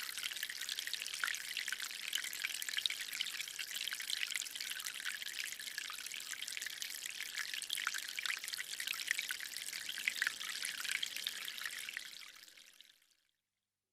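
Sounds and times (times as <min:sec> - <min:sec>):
water trickling from a hose: 0:00.0 - 0:13.3.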